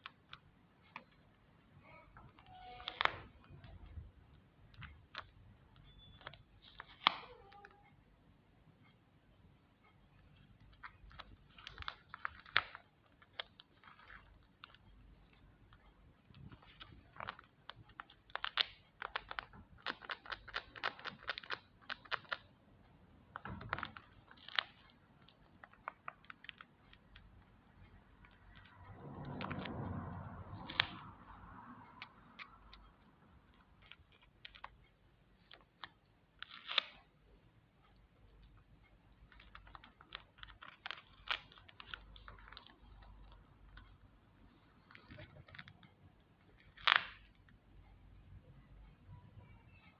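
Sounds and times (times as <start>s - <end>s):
paper and tape crinkling: 23.3s - 27.4s, 39.3s - 43.9s.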